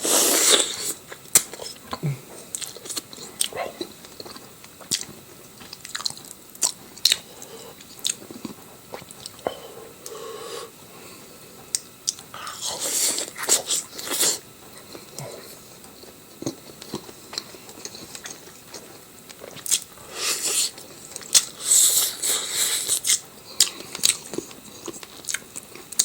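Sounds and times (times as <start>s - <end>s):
noisy bite or slurp: 0.0s - 1.0s, 12.4s - 14.4s, 21.4s - 23.2s
person chewing and biting: 0.0s - 9.4s, 16.4s - 26.0s.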